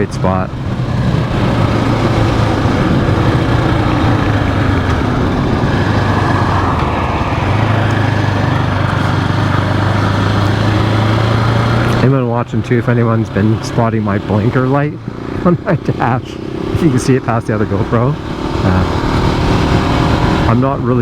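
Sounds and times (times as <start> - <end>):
wind noise on microphone: 0.0 - 12.0, 18.2 - 21.0
motorcycle engine cruising: 0.0 - 21.0.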